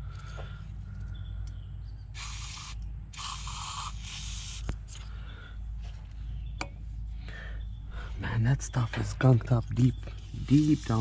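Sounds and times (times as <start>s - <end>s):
aerosol spray can hissing: 2.2s - 4.7s, 10.2s - 11.0s.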